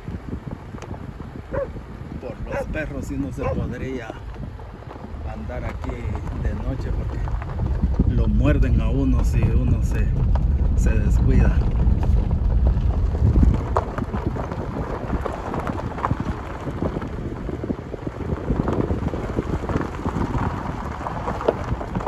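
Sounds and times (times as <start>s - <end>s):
wind buffeting microphone: 0.0s - 22.0s
footsteps crunching on dirt path: 0.9s - 22.0s.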